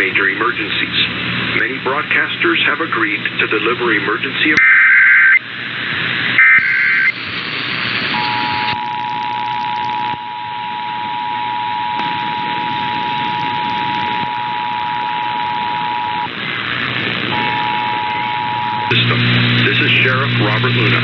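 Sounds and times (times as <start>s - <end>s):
radio static hiss: 0.0s - 21.0s
digital data burst: 6.4s - 8.8s
two-tone attention signal: 8.2s - 16.3s, 17.3s - 19.0s.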